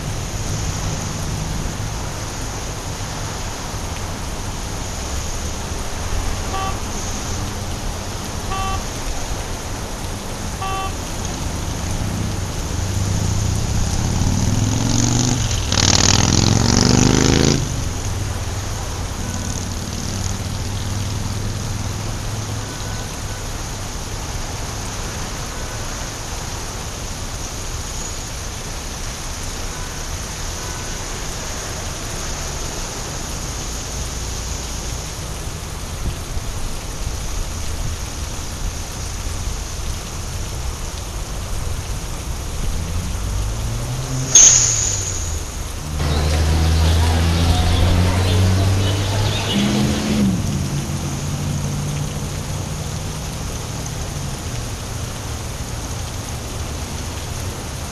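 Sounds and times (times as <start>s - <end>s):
rain falling on wet street: 0.0s - 57.9s
vehicle passing on wet road: 0.0s - 57.9s
short beeps: 6.5s - 6.8s, 8.5s - 8.8s, 10.6s - 11.0s, 44.3s - 45.6s.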